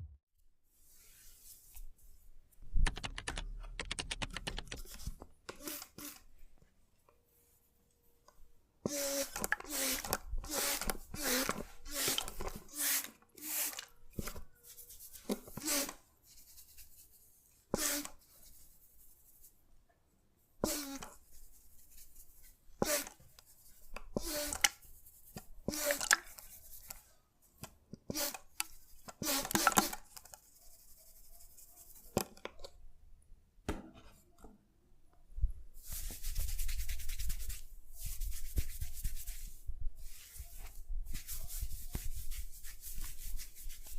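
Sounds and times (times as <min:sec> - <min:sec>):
hands rubbing through hair: 0:35.8 - 0:43.9.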